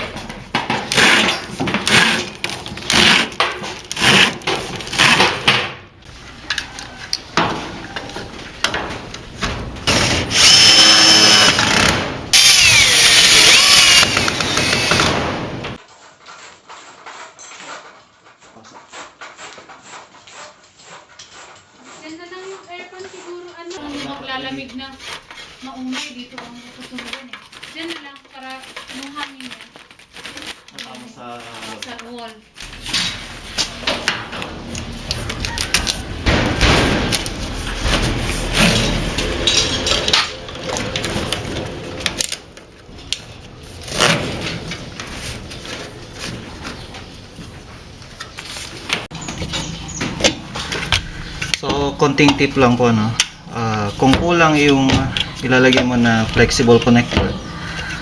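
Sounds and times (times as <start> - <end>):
power drill through plywood: 9.9 - 15.7
scraping and rustling: 15.8 - 58.0.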